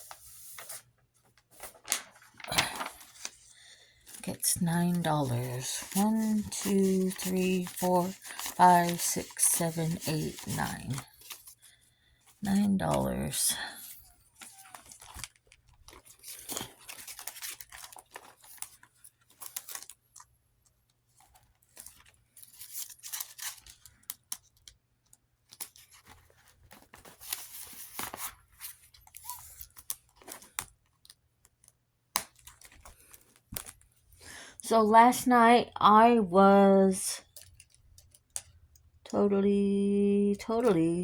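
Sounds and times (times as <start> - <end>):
paper rustling and crinkling: 0.0 - 11.8, 12.4 - 20.3, 21.0 - 24.8, 25.4 - 34.1.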